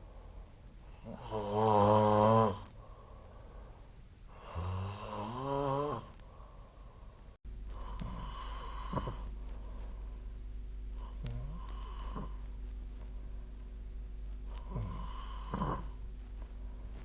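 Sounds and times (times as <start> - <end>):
steady low hum: 0.0 - 17.0
person snoring: 1.0 - 2.7, 4.3 - 6.1, 7.7 - 9.3, 11.0 - 12.4, 14.5 - 16.0.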